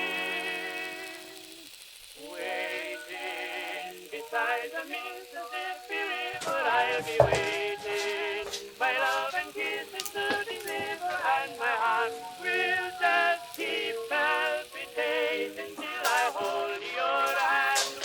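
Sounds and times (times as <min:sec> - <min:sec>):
old-time popular song: 0:00.0 - 0:01.4, 0:02.2 - 0:18.0.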